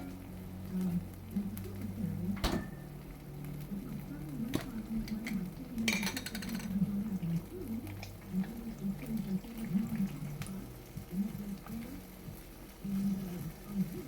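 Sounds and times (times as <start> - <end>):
dishes and utensils clinking: 4.6 - 6.8.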